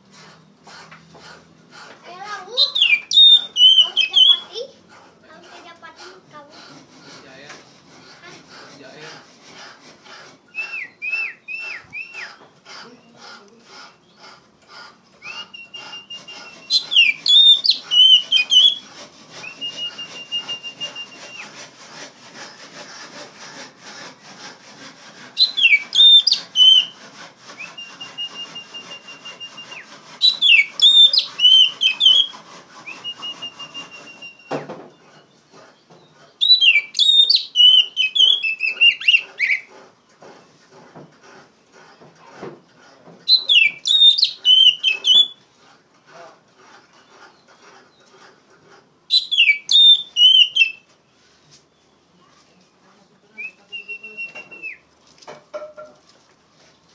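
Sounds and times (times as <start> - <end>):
bird singing: 2.5 - 4.7, 10.5 - 14.4, 15.2 - 21.5, 25.4 - 27.0, 27.6 - 40.6, 43.3 - 45.4, 49.1 - 50.9, 53.3 - 54.8.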